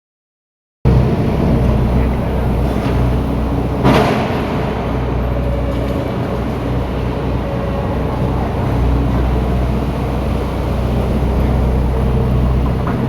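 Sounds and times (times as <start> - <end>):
heavy diesel engine running: 0.9 - 13.0.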